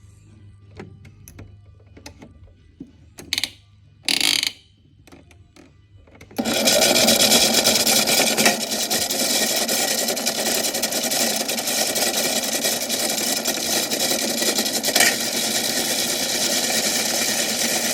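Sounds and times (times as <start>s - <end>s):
toy washing machine running: 6.3s - 17.9s
dominoes rattling in drum: 6.4s - 17.9s.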